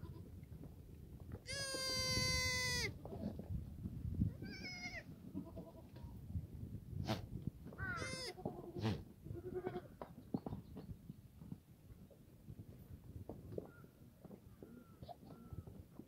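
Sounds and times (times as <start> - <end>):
goats bleating: 1.5 - 2.9, 7.8 - 9.9.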